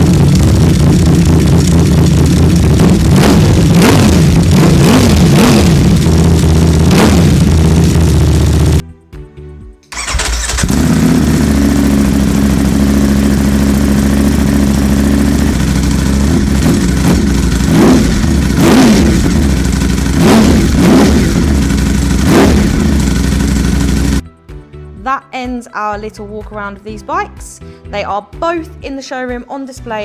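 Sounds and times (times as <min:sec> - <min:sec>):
motorcycle engine idling: 0:00.0 - 0:08.8, 0:10.0 - 0:24.2
motorcycle throttle blips: 0:00.0 - 0:08.8, 0:09.9 - 0:24.2.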